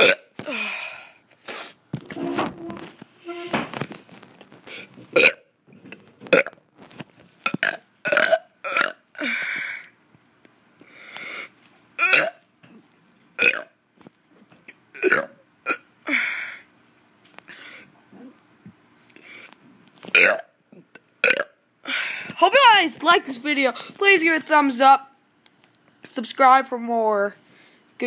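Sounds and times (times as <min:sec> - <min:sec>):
child burping: 0:00.0 - 0:00.6, 0:05.2 - 0:05.5, 0:07.5 - 0:09.4, 0:12.0 - 0:12.4, 0:13.4 - 0:13.7, 0:15.0 - 0:15.9, 0:20.1 - 0:21.6.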